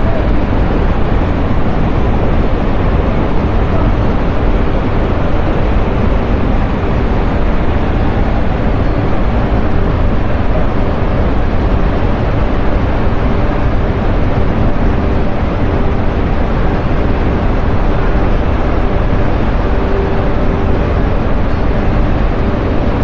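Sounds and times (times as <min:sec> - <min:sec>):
waterfall roaring: 0:00.0 - 0:23.0
wind rumble on microphone: 0:00.0 - 0:23.0.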